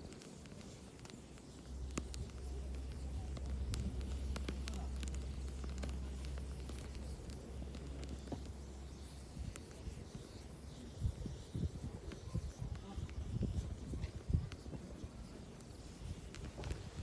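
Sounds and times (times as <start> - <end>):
wood fire crackling and popping: 0.0 - 17.0
low wind rumble on microphone: 0.8 - 17.0.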